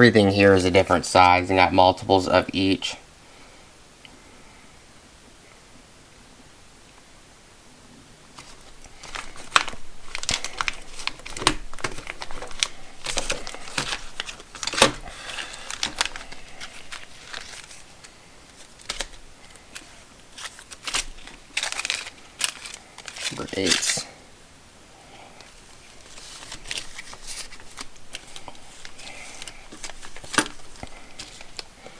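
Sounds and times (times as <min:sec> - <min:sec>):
plastic packaging crinkling: 0:08.3 - 0:24.4, 0:25.4 - 0:31.9.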